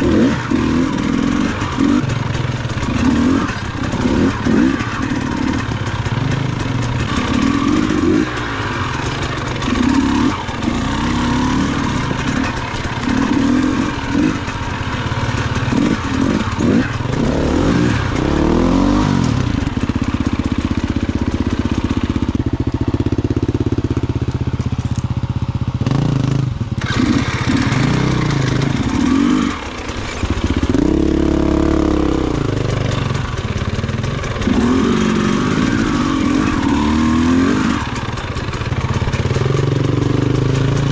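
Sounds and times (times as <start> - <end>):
off-road motorcycle engine revving: 0.0 - 40.9.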